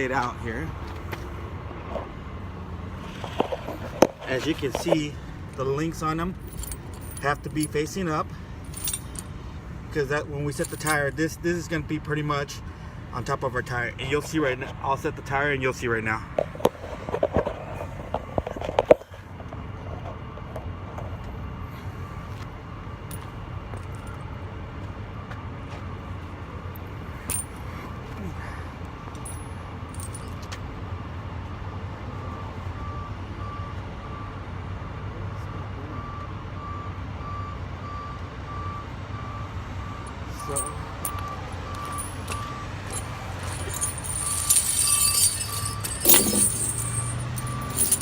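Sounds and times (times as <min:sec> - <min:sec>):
tire chain links clattering: 0:05.5 - 0:09.6, 0:10.4 - 0:11.3, 0:23.1 - 0:24.2, 0:27.1 - 0:27.8, 0:29.1 - 0:30.5, 0:40.0 - 0:48.0.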